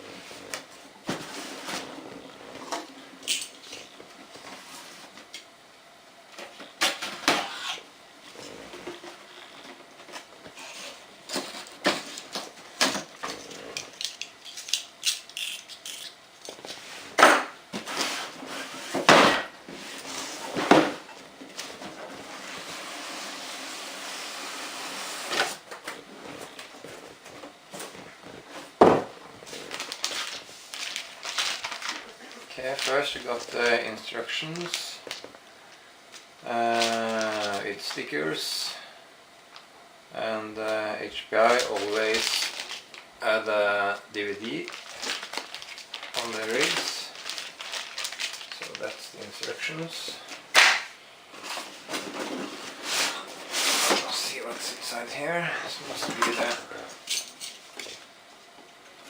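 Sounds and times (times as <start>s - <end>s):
packaging rustling: 29.3s - 33.8s, 41.5s - 43.1s, 44.4s - 50.8s.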